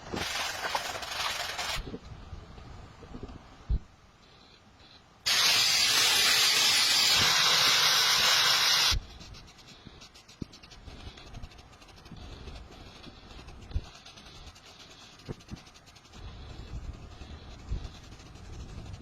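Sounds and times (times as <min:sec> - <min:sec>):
pressurised spray hissing: 0:05.3 - 0:19.0.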